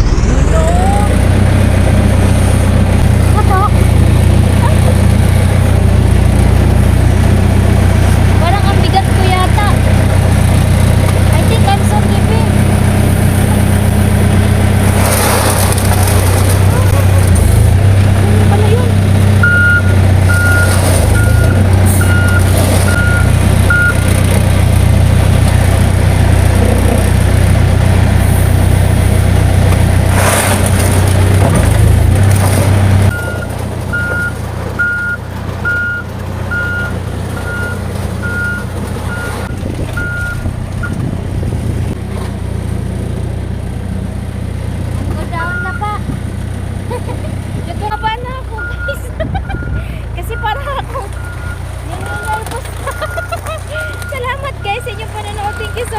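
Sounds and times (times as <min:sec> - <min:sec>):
backhoe engine running: 0:00.0 - 0:55.9
reversing alarm beeping: 0:19.4 - 0:24.1, 0:33.1 - 0:41.0, 0:47.9 - 0:50.6, 0:51.2 - 0:52.4.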